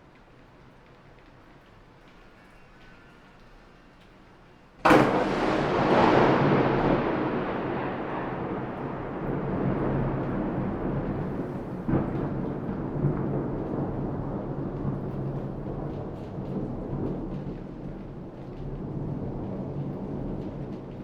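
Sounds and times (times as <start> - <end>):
rolling thunder rumble: 4.8 - 21.0
thunder crack: 4.8 - 21.0.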